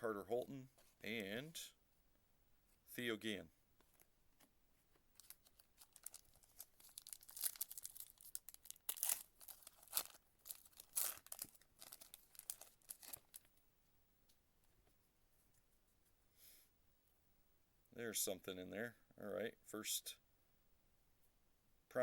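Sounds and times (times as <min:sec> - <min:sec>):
wrapper tearing and crinkling: 0:05.2 - 0:13.5.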